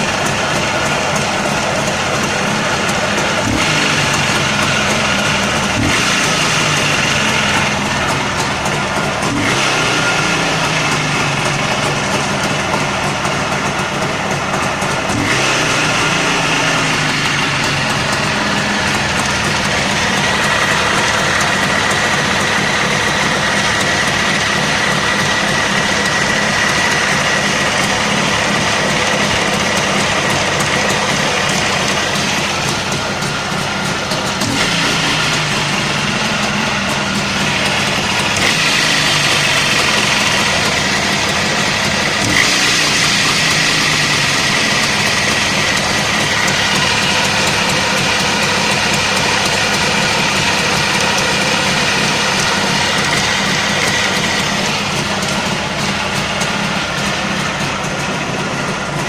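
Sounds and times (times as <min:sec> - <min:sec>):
engine cylinder knock: 0:00.0 - 0:59.0
two-stroke motorcycle engine revving: 0:00.0 - 0:59.0.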